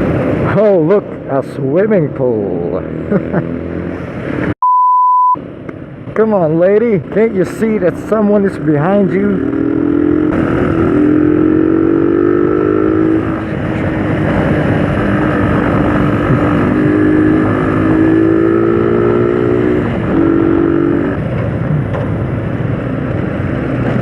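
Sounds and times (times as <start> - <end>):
wind and road noise: 0.0 - 4.6, 5.2 - 24.0
motorcycle engine accelerating: 8.4 - 24.0.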